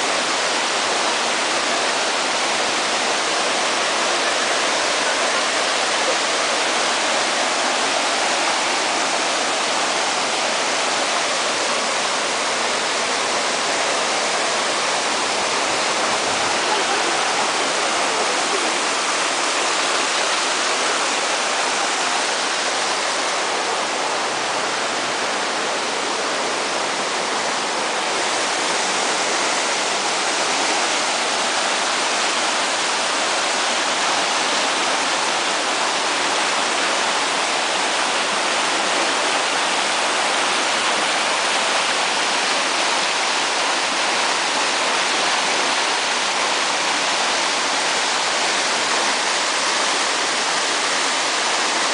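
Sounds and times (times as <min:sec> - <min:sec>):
waterfall rushing: 0:00.0 - 0:51.9.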